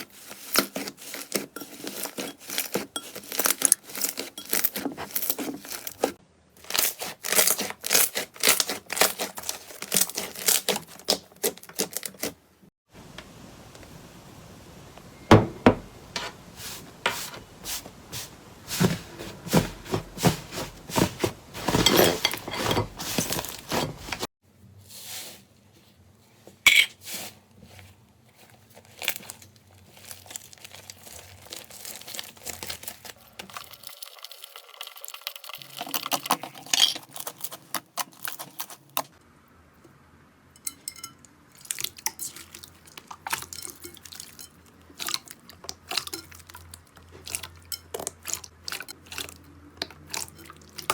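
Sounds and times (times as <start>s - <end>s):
slime squishing by hand: 0.0s - 12.4s, 27.1s - 33.8s.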